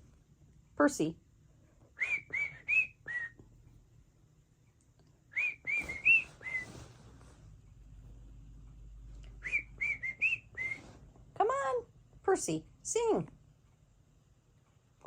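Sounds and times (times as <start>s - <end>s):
cockatiel whistled chirps: 2.0s - 3.4s, 5.3s - 6.8s.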